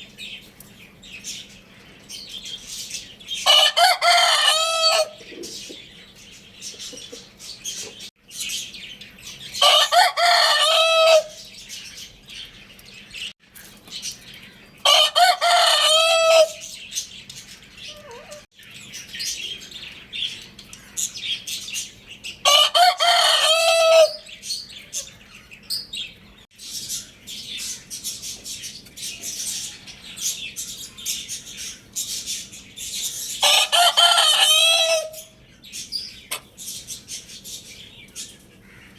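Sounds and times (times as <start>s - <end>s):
rooster crowing: 3.5s - 5.2s, 9.6s - 11.4s, 14.9s - 16.6s, 22.4s - 24.3s, 33.4s - 35.2s.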